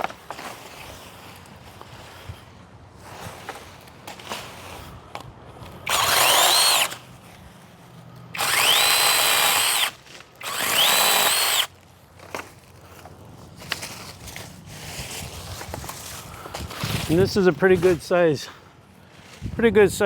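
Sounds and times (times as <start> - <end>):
chainsaw motor whine: 5.8 - 7.2, 8.2 - 11.8.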